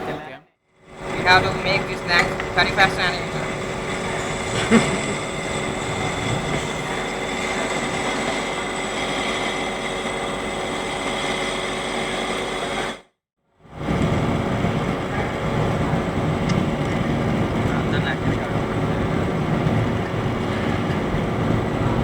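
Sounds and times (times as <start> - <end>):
lathe running: 0.9 - 13.0, 13.7 - 22.0.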